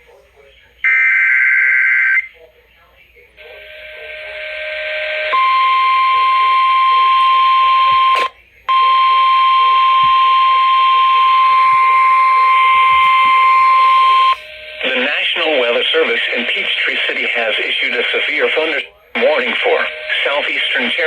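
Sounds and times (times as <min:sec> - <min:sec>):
radio hiss: 0:00.0 - 0:01.0, 0:02.2 - 0:21.0
high alarm beep: 0:03.6 - 0:17.1, 0:19.2 - 0:21.0.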